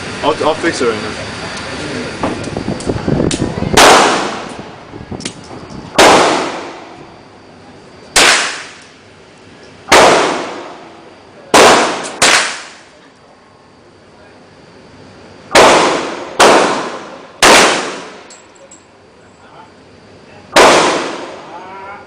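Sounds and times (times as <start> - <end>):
gunshots: 3.8 - 4.5, 6.0 - 6.9, 8.2 - 8.8, 9.9 - 10.8, 11.5 - 12.8, 15.5 - 18.2, 20.6 - 21.4.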